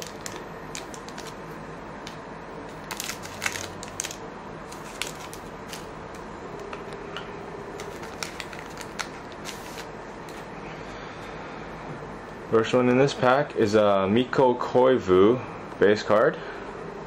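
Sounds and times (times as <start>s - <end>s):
card pack wrapper crinkling: 0.0s - 1.4s, 2.7s - 5.9s, 7.7s - 10.5s.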